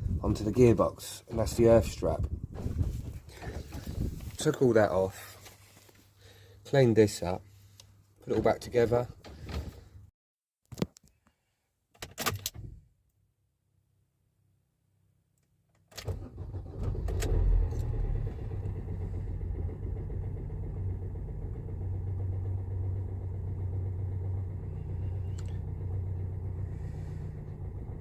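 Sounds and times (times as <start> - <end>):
diesel engine idling: 17.6 - 28.0.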